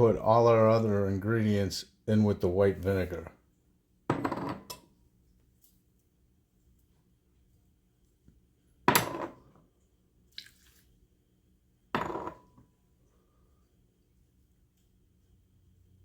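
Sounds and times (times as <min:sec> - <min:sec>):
ceramic knocking against bowl: 0:12.0 - 0:12.5.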